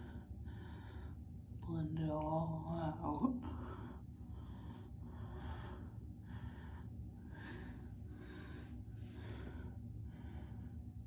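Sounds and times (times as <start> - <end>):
heavy breathing: 3.5 - 10.9.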